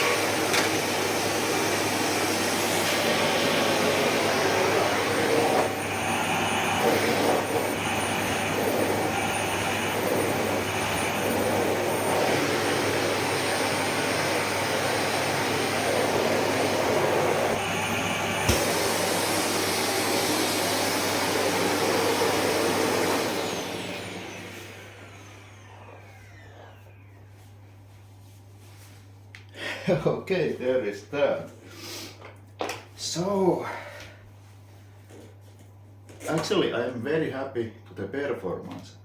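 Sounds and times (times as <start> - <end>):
vacuum cleaner running: 0.0 - 28.9
motor winding down whine: 23.3 - 27.2.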